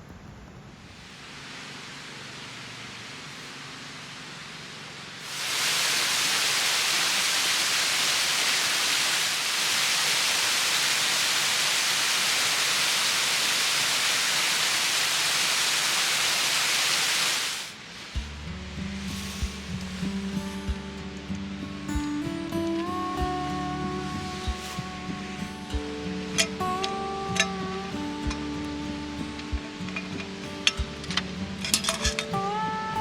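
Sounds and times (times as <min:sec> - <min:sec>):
loud rushing hiss: 0:00.7 - 0:32.0
music: 0:18.2 - 0:33.0.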